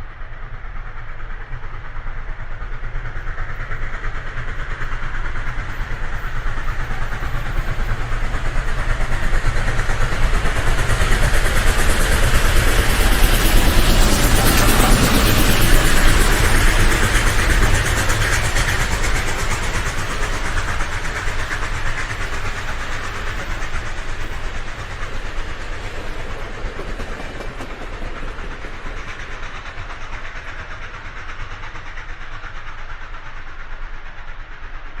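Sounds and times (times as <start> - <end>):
train wheels clattering on rails: 0.1 - 35.0.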